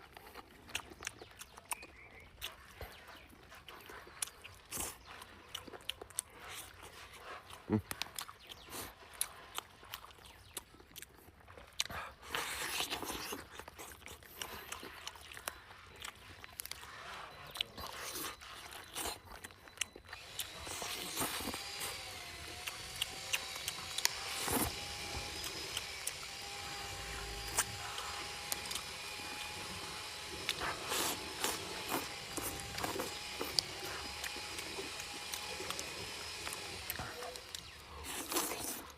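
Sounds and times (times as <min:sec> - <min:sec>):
person chewing chicken: 0:00.0 - 0:38.9
faint steady whine: 0:20.0 - 0:38.9.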